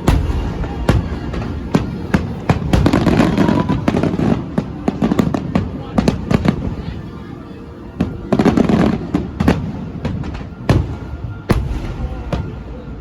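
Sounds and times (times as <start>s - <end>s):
fireworks booming: 0.0s - 7.0s, 8.0s - 13.0s
fireworks crackling: 0.0s - 13.0s.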